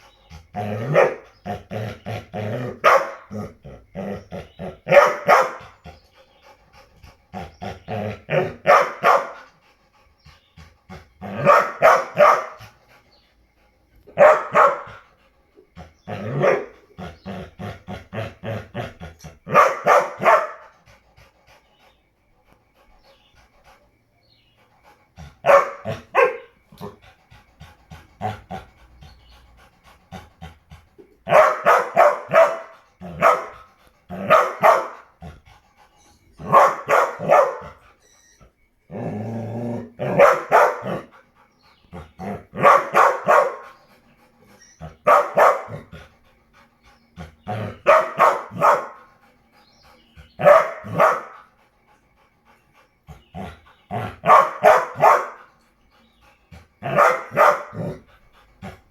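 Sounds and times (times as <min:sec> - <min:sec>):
dog barking: 0:00.8 - 0:01.2, 0:02.8 - 0:03.4, 0:04.8 - 0:05.7, 0:08.3 - 0:09.4, 0:11.3 - 0:12.6, 0:14.1 - 0:15.0, 0:16.2 - 0:16.7, 0:19.5 - 0:20.7, 0:25.4 - 0:27.0, 0:31.3 - 0:35.0, 0:36.4 - 0:37.8, 0:40.0 - 0:41.1, 0:42.2 - 0:43.7, 0:44.8 - 0:45.9, 0:47.6 - 0:49.0, 0:50.4 - 0:51.4, 0:53.9 - 0:55.5, 0:56.8 - 0:58.0.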